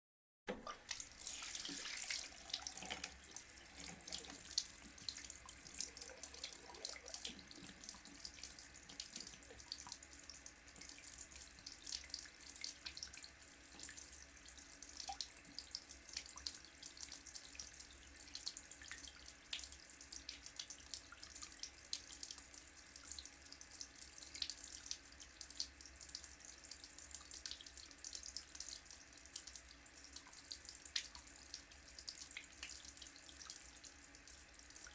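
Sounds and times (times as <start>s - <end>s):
tap water splashing in basin: 0.5s - 10.0s.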